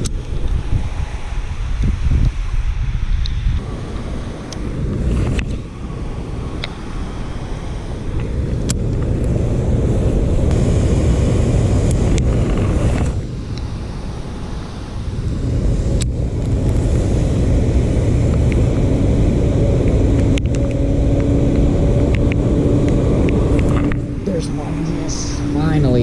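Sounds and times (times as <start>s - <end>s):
floodwater rushing: 16.2s - 26.0s.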